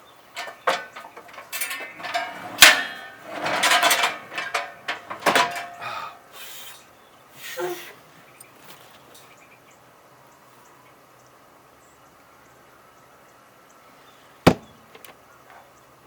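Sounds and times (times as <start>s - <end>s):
objects knocking and clattering: 0.4s - 5.8s
sharp bang: 14.5s - 14.8s.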